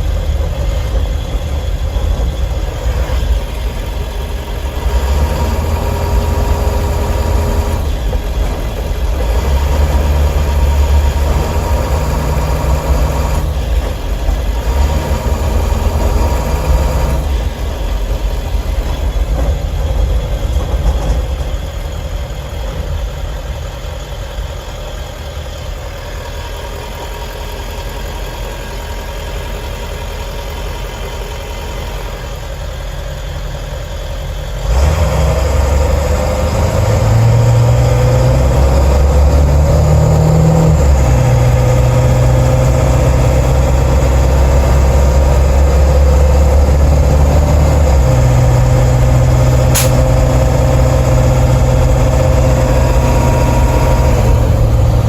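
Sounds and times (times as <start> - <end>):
diesel engine running: 0.0 - 55.0
sharp click: 49.8 - 50.2.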